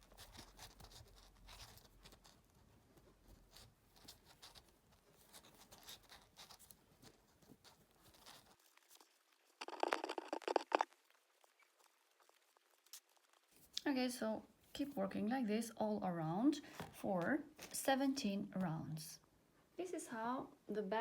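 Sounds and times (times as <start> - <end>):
crochet hook rustling and ticking: 0.0 - 14.0.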